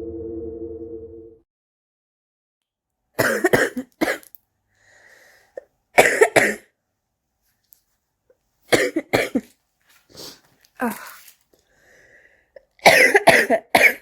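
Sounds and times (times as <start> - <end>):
person coughing: 3.2 - 4.3, 6.0 - 6.7, 8.7 - 9.5, 12.8 - 14.0.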